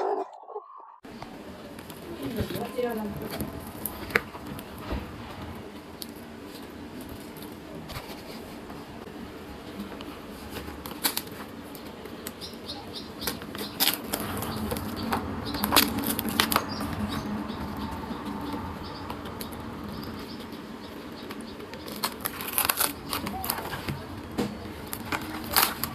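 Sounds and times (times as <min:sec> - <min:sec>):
sharp clicks and rustles: 0:21.2 - 0:25.9.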